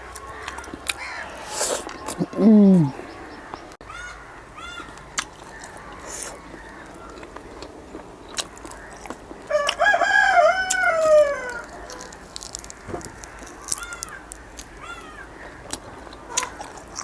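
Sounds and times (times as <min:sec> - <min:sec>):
rooster crowing: 0:09.5 - 0:12.1.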